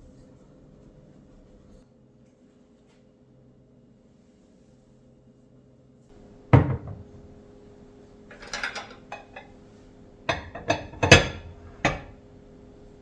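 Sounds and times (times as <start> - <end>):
kitchen things knocking on hard surface: 6.2 - 7.4, 8.3 - 9.6, 10.2 - 12.3.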